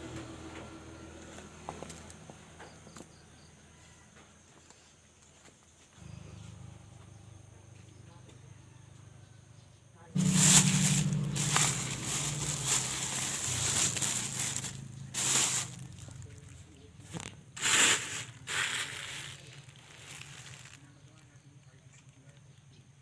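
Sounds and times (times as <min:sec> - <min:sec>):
low steady hum: 0:06.0 - 0:23.0
dry stalks and leaves crackling: 0:10.2 - 0:21.3.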